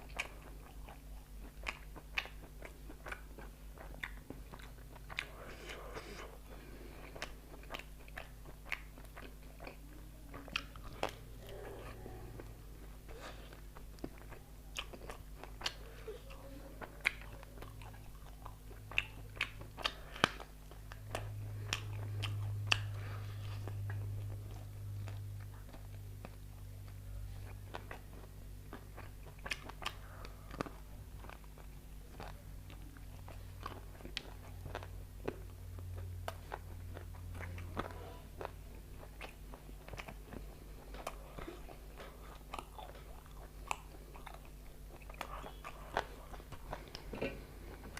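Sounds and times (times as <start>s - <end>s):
low steady hum: 0.0s - 47.9s
person chewing food: 0.0s - 47.9s.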